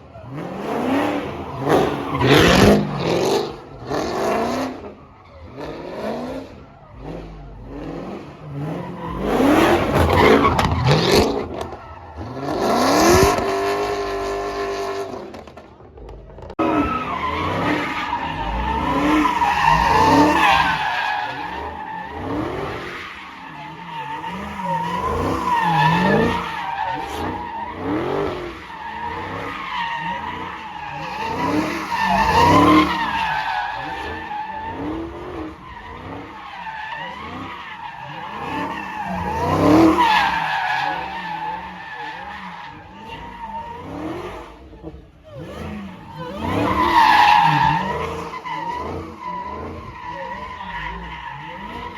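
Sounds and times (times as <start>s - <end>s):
car engine revving: 0.0s - 51.9s.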